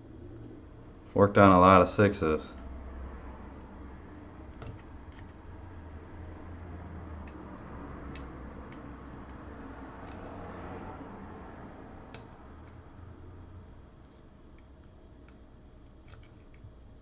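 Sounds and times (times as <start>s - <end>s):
steady low hum: 0.0s - 17.0s
light sharp clicks of small tools: 7.1s - 9.4s.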